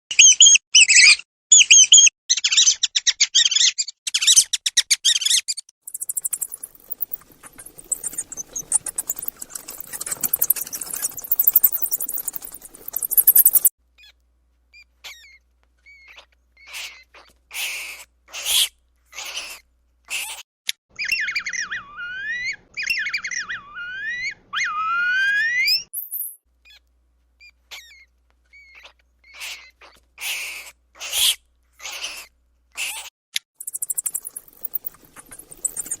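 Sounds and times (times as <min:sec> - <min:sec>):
mouse squeaking: 0:00.1 - 0:20.4, 0:27.4 - 0:36.0.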